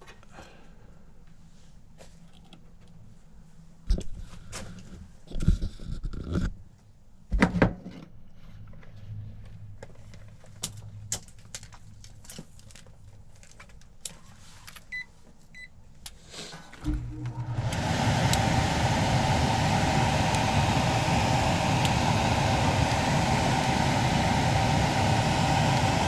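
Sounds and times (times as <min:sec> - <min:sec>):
air conditioner hum: 0:08.4 - 0:26.0.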